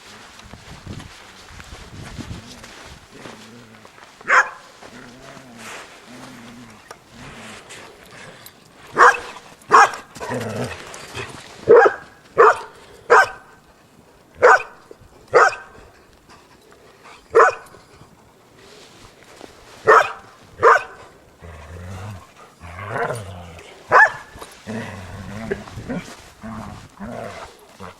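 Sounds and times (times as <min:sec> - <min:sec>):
dog barking: 0:04.2 - 0:04.7, 0:09.0 - 0:10.4, 0:11.7 - 0:13.5, 0:14.4 - 0:15.8, 0:17.3 - 0:17.7, 0:19.8 - 0:21.0, 0:23.9 - 0:24.4.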